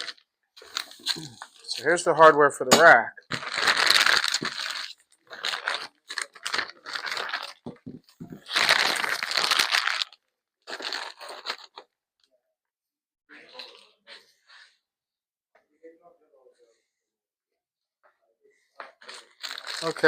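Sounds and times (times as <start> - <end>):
packaging crinkling and tearing: 0.0 - 2.0, 2.8 - 11.9, 19.0 - 20.0.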